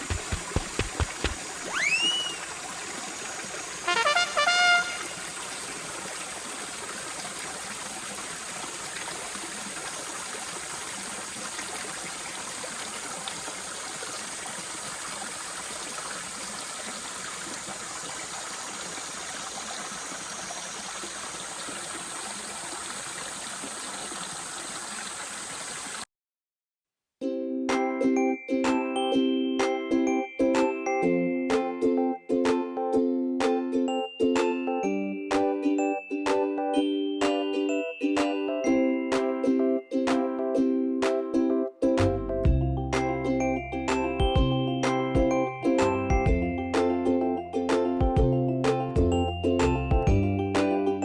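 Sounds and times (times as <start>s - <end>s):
flowing water rushing: 0.0s - 26.0s.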